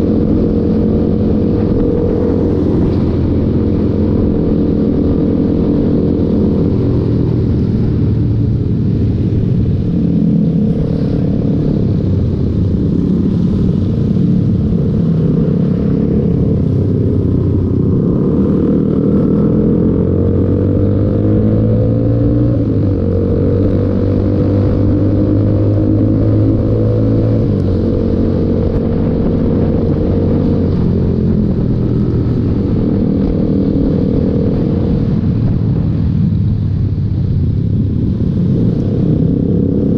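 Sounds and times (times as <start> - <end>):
motorcycle engine revving: 0.0 - 36.8, 37.5 - 39.9.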